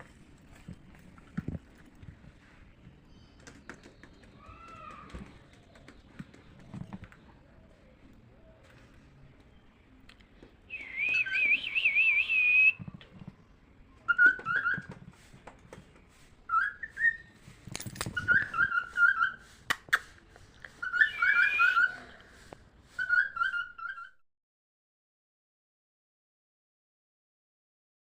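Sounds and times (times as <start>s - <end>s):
cockatiel whistling and chirping: 14.1s - 14.9s, 16.5s - 17.3s, 18.2s - 19.4s, 20.8s - 22.0s, 23.0s - 24.2s.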